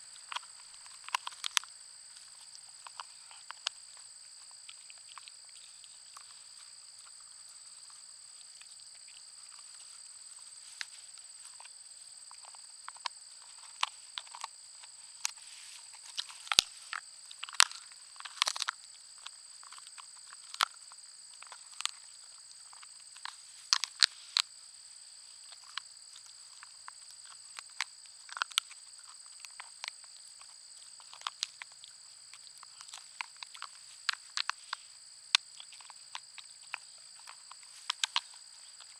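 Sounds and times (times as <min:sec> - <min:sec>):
dog chewing a bone: 0:00.2 - 0:04.0.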